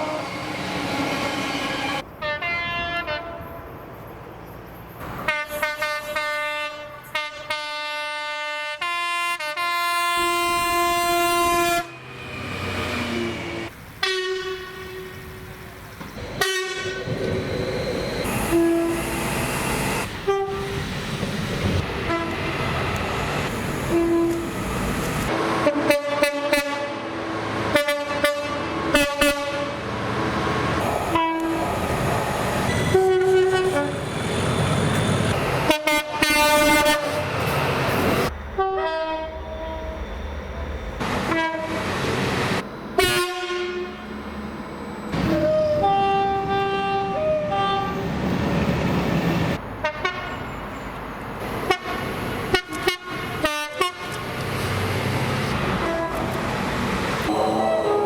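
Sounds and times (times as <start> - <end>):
train running noise: 0.0 - 2.4, 10.1 - 58.0
train horns blasting: 0.0 - 3.7, 5.2 - 15.6, 16.3 - 17.2, 18.2 - 20.9, 21.9 - 23.0, 23.8 - 24.6, 25.3 - 29.9, 31.0 - 31.6, 32.7 - 34.1, 35.6 - 37.4, 38.6 - 40.0, 41.0 - 42.0, 43.0 - 44.2, 45.2 - 48.0, 49.8 - 50.5, 51.6 - 54.2, 55.6 - 56.4, 57.2 - 58.0.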